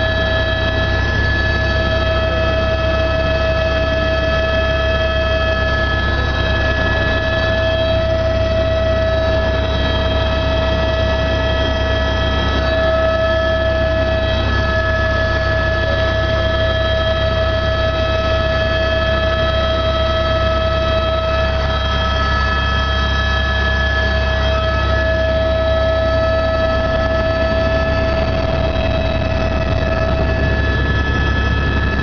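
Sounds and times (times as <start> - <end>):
helicopter rotor drone: 0.0 - 32.0
helicopter turbine whine: 0.0 - 32.0.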